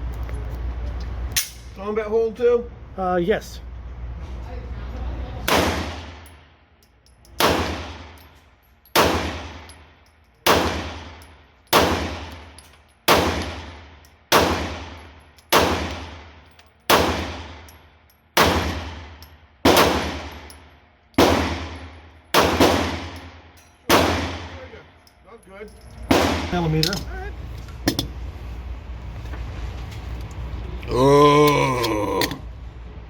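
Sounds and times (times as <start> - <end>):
handgun shots indoors: 14.3 - 16.1, 18.4 - 24.4.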